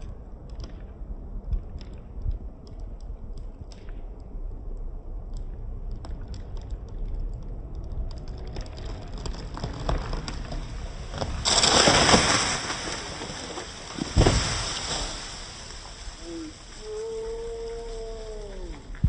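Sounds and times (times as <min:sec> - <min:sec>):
wood crackling and snapping: 0:00.0 - 0:19.0
tree crashing down: 0:08.2 - 0:19.0.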